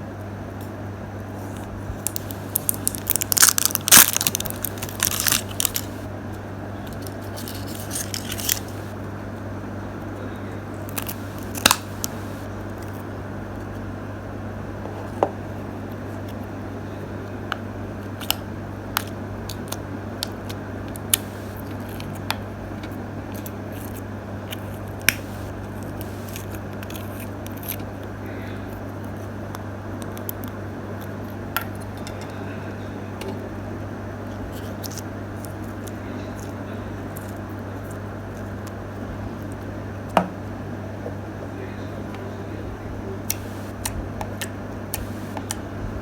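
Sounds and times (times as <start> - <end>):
package clicks and snips: 2.0 - 6.1, 6.9 - 8.9, 10.9 - 12.5.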